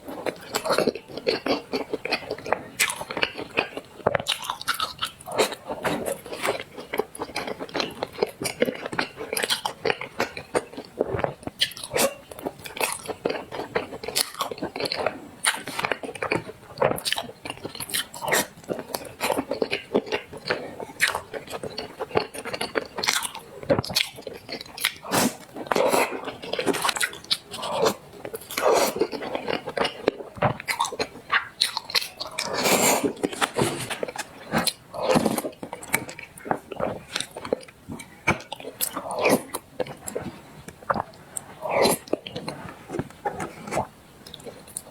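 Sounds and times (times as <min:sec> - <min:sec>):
person chewing: 0:00.0 - 0:44.9
slurping: 0:32.2 - 0:36.1.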